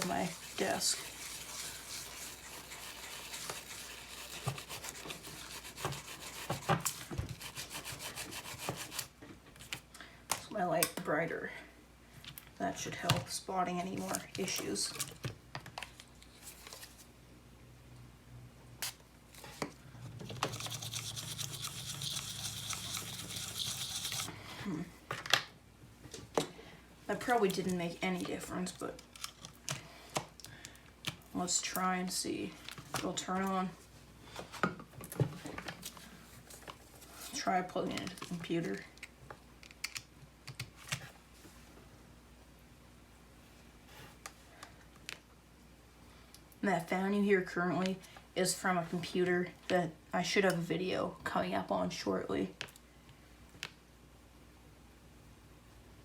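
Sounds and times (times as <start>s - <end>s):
rubbing and scrubbing strokes: 0.0s - 9.1s, 20.4s - 24.4s.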